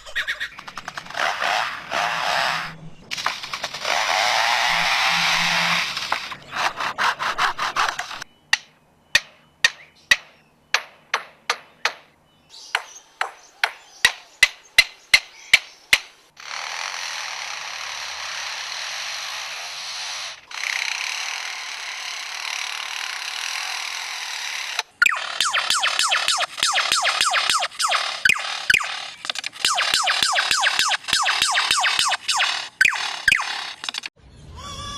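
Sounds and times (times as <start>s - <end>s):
bird mimicking toy gun rattle: 0.2s - 6.4s, 24.8s - 34.1s
bird mimicking power drill whir: 0.3s - 8.3s, 16.4s - 34.2s
bird mimicking handsaw strokes: 3.7s - 8.3s, 24.7s - 34.1s
bird mimicking hammer blows: 6.3s - 12.1s, 24.8s - 34.1s.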